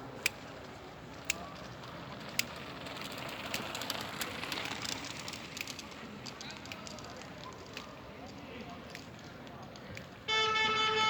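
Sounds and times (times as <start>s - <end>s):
mountain bikes rolling over rough track: 1.0s - 9.7s.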